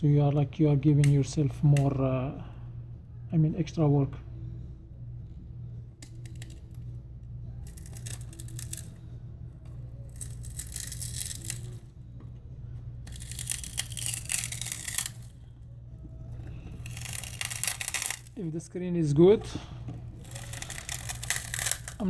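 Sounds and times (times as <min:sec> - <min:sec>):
steady low hum: 0:00.0 - 0:22.0
adhesive tearing: 0:07.6 - 0:09.0, 0:10.0 - 0:11.9, 0:13.1 - 0:15.4, 0:16.3 - 0:18.4, 0:20.1 - 0:22.0
broken glass crackling: 0:10.2 - 0:11.8, 0:13.1 - 0:15.3, 0:20.2 - 0:22.0.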